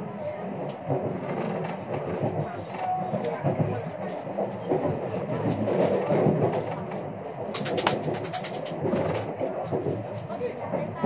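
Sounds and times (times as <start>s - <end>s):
murmur of voices: 0.0s - 11.0s
train rumbling on rails: 0.0s - 11.0s
wheel clicks and clatter: 7.5s - 9.3s.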